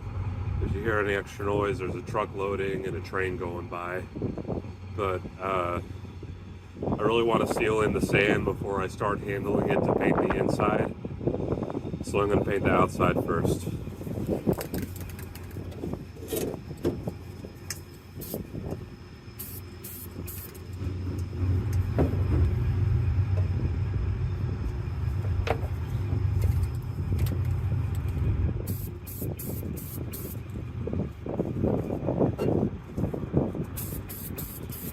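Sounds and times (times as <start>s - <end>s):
heavy vehicle rumble: 0.0s - 34.9s
aerosol spray can hissing: 18.2s - 18.4s, 19.4s - 20.6s, 28.7s - 30.4s, 33.7s - 34.9s.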